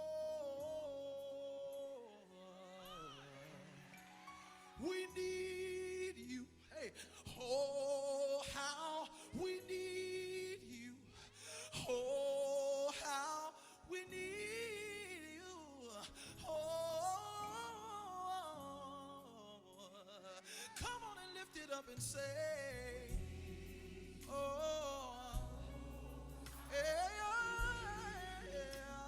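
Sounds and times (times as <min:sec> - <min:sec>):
soft sustained accompaniment: 0:22.4 - 0:29.0.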